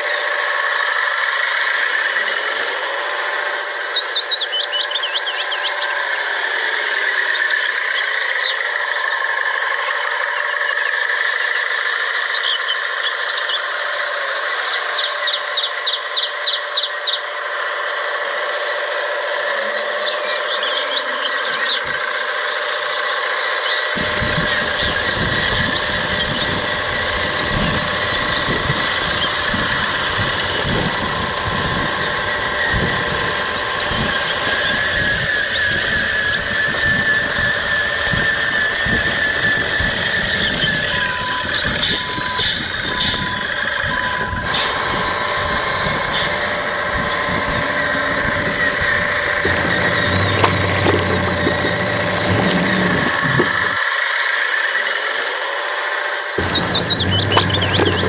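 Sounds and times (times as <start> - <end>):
rough rumbling engine-like noise: 23.6 - 53.8, 56.4 - 58.0
toy motor and gears whining: 24.0 - 53.8, 56.4 - 58.0
short high squeaks: 49.2 - 53.8, 56.4 - 58.0.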